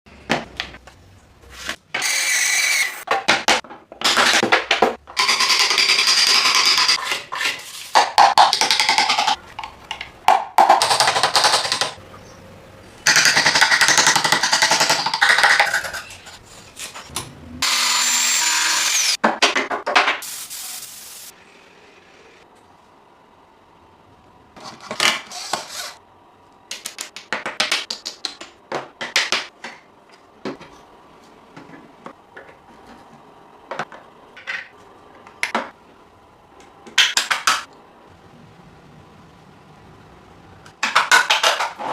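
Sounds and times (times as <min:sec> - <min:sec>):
power tools cutting wood: 0:02.0 - 0:03.0, 0:17.6 - 0:19.2.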